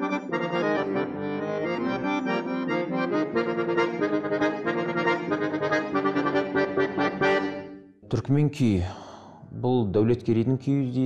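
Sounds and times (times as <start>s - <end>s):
accordion playing folk tune: 0.0s - 7.9s.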